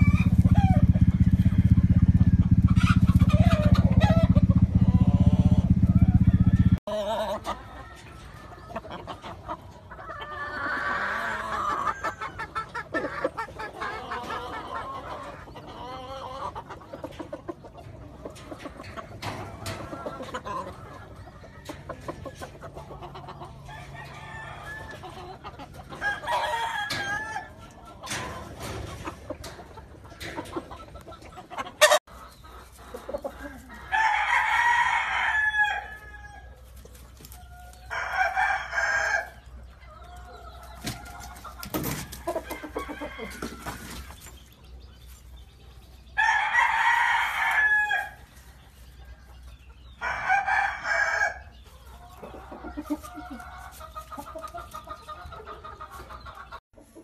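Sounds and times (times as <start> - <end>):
soft clucking: 0.0 - 33.8
roosters crowing: 0.0 - 56.6.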